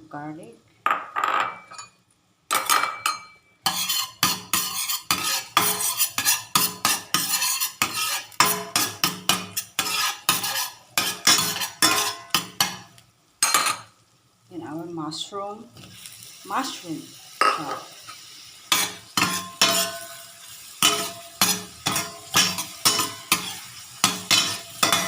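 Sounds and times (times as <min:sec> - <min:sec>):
utensil stirring and scraping pan: 0:03.0 - 0:13.6, 0:17.4 - 0:25.0.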